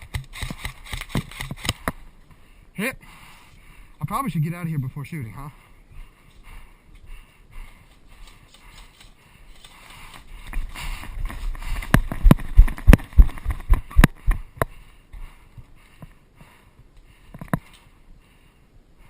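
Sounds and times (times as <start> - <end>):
rising rustle: 7.7 - 14.4.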